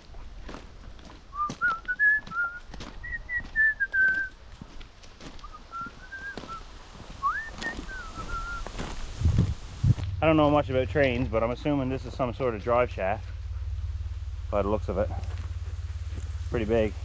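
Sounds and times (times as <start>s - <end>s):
footsteps on forest floor: 0.0s - 10.2s, 15.1s - 16.9s
person whistling a tune: 1.4s - 4.3s, 5.4s - 6.6s, 7.2s - 8.7s.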